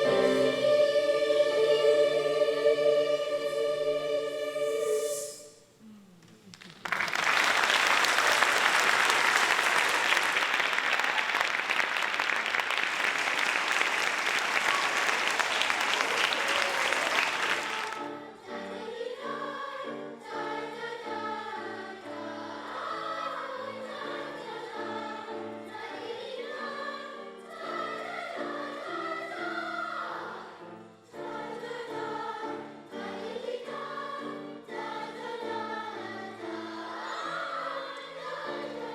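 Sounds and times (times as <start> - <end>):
choir singing: 0.0 - 5.7, 13.3 - 38.9
audience applauding: 6.5 - 18.0.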